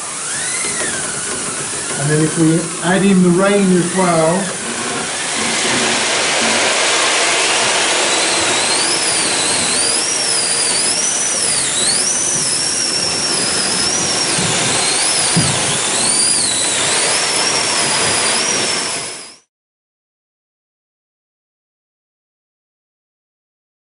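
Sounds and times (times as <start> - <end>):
rushing hiss of wind and rain effects: 0.0 - 19.3
high wavering whistle: 3.8 - 19.5.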